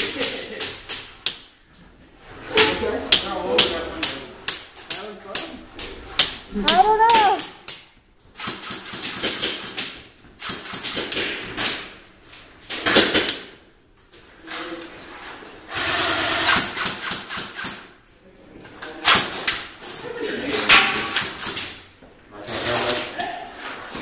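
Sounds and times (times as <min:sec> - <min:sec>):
airsoft guns firing: 0:08.4 - 0:11.9, 0:15.7 - 0:17.9.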